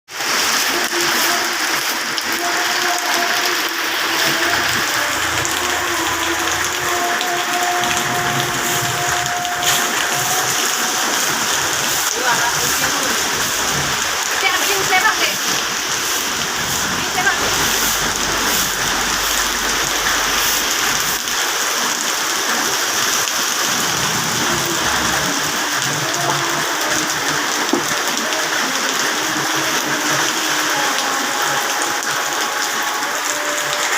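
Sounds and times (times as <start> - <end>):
steady rain: 0.1 - 33.9
low rumble: 3.9 - 21.6.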